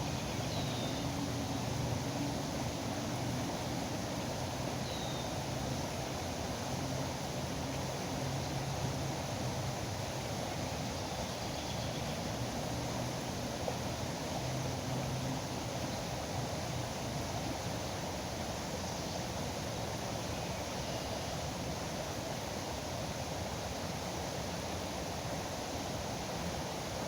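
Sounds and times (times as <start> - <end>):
rushing river water: 0.0 - 27.0.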